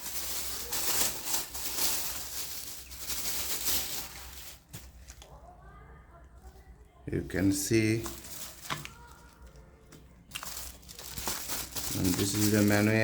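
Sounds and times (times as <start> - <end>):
packaging rustling and crinkling: 0.0 - 5.3, 7.4 - 13.0.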